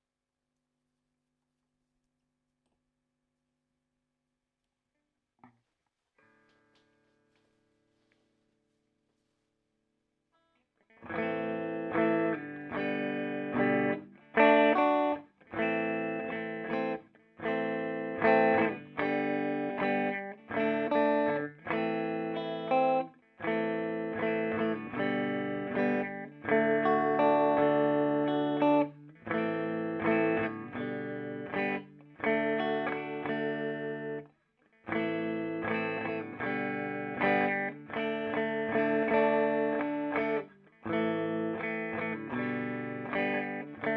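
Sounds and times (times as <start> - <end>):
clean electric guitar chords: 11.0 - 34.2, 34.9 - 43.9.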